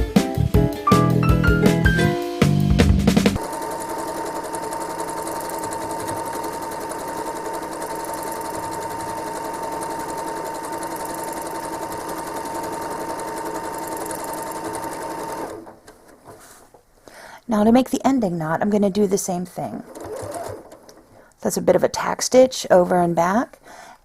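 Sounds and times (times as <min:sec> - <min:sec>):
sewing machine running: 0:03.4 - 0:15.8, 0:19.8 - 0:21.0.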